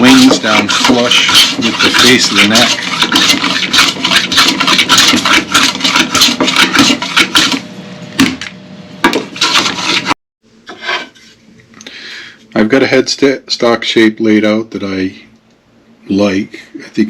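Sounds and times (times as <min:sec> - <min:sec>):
hand plane rasping strokes: 0:00.0 - 0:07.6, 0:09.4 - 0:10.1.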